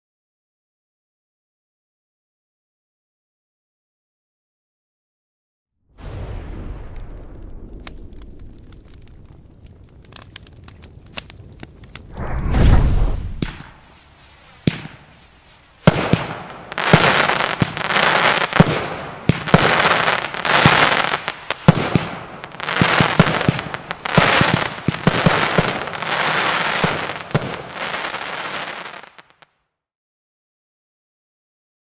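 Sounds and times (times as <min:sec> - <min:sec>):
firework shots thumping and hissing: 0:11.1 - 0:29.4.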